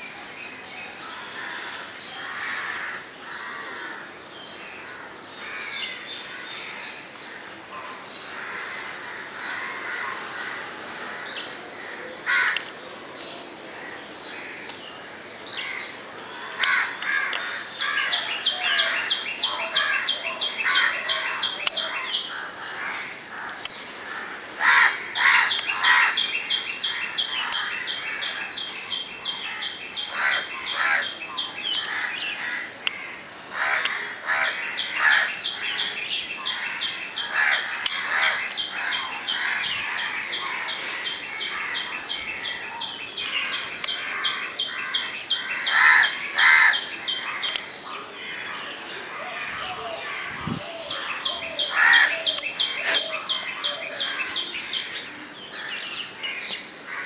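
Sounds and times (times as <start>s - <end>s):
birds chirping: 0.0s - 57.0s
harsh low bird calls: 13.7s - 57.0s.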